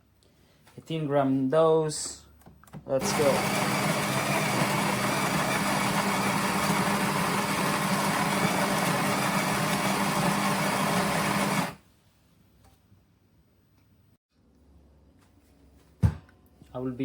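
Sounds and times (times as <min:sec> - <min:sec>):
coffee grinder grinding beans: 0:03.0 - 0:11.8.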